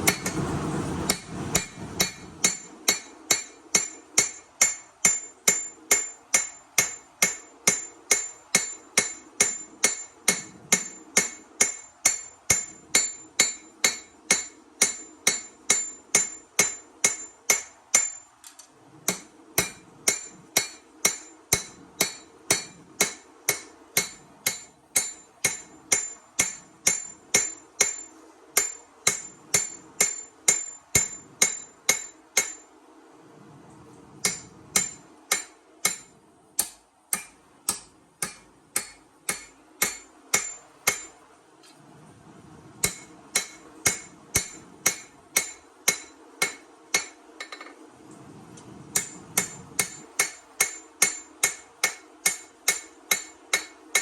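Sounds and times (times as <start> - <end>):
hammer ringing on steel: 1.1 - 18.3, 19.1 - 32.6, 34.2 - 41.2, 42.8 - 47.7, 49.0 - 54.0.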